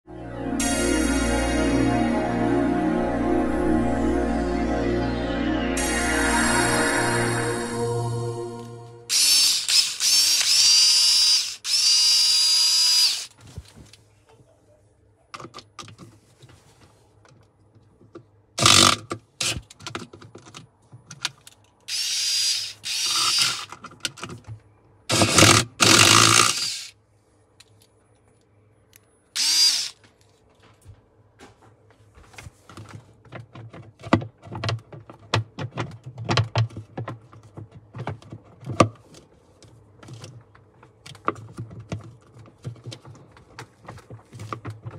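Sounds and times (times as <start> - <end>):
power tool motor whirring: 9.1 - 13.3, 21.9 - 23.7, 25.1 - 26.9, 29.4 - 30.0.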